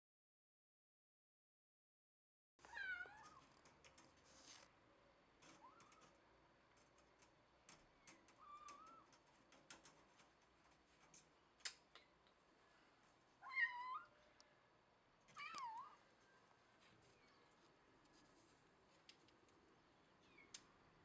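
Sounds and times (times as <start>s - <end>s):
cat meowing: 2.6s - 3.4s, 13.4s - 14.2s, 15.4s - 16.0s
small clicks and taps: 3.2s - 4.7s, 5.4s - 12.4s.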